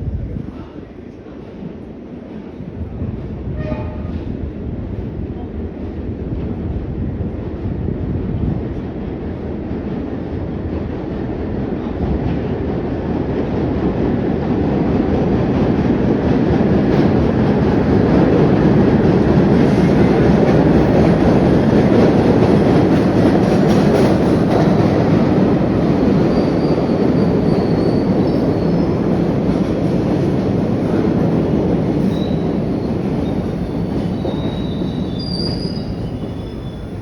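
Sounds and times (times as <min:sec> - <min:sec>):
train wheels rumbling on rails: 0:00.0 - 0:37.0
high wheel squeal: 0:26.3 - 0:29.0, 0:34.1 - 0:37.0.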